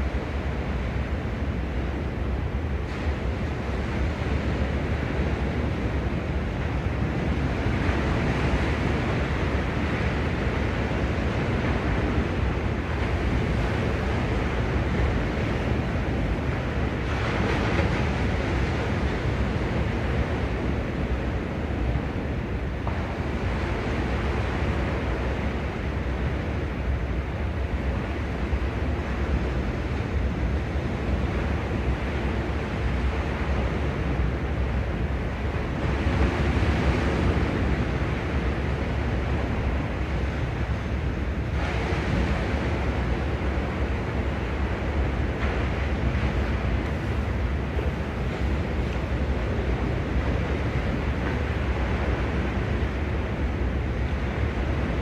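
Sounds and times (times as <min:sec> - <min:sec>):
sea waves washing on shore: 0:00.0 - 0:55.0
wind rumbling on microphone: 0:00.0 - 0:55.0.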